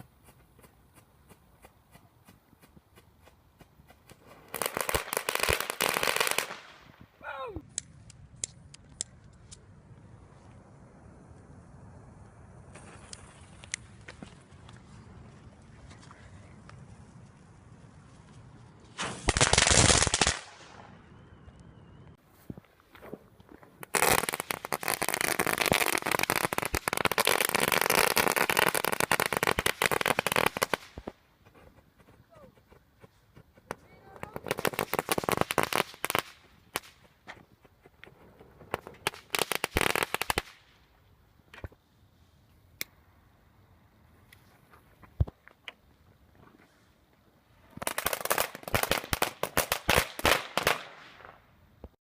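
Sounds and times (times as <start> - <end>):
firework crackling pops: 0.0 - 9.6, 18.8 - 21.0, 22.6 - 32.0, 32.7 - 41.8, 47.6 - 52.0
sharp isolated pops: 23.8 - 40.8.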